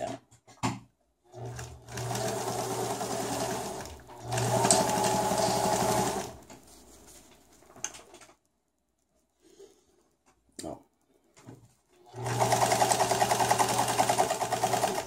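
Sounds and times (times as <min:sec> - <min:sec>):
sewing machine stitching: 0:01.3 - 0:06.6, 0:12.1 - 0:15.0.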